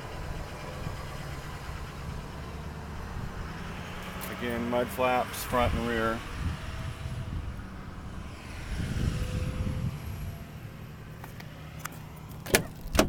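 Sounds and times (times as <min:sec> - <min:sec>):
low rumbling wind: 0:00.0 - 0:13.0
handling noise: 0:11.2 - 0:13.0
car door latch click: 0:12.4 - 0:13.0.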